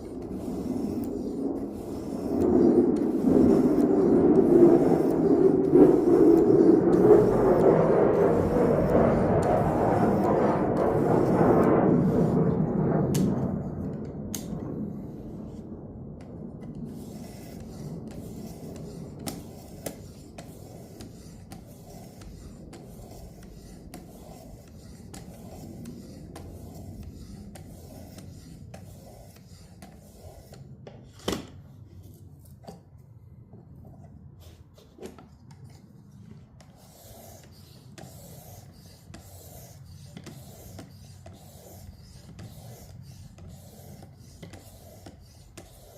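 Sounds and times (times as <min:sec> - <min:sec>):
loud rumble: 0:00.0 - 0:28.2.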